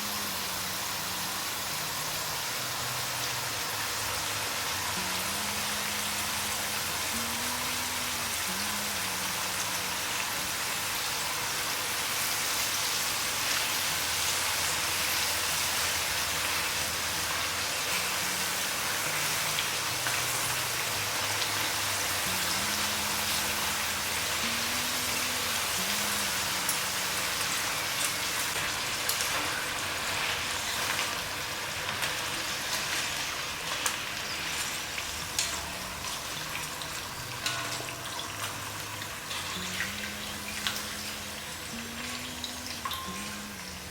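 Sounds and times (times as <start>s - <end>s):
food deep-frying in oil: 0.0s - 43.9s
oil crackles and pops: 25.8s - 41.0s.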